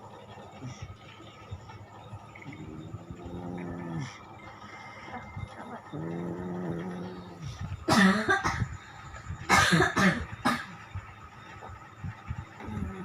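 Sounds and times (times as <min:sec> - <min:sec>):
loud rattling snoring: 0:02.4 - 0:10.7.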